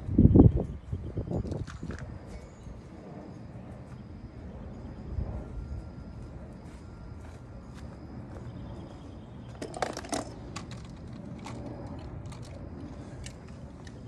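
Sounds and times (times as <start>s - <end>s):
wind rumble on microphone: 0.0s - 14.0s
toy cars clicking and clattering: 9.6s - 12.6s.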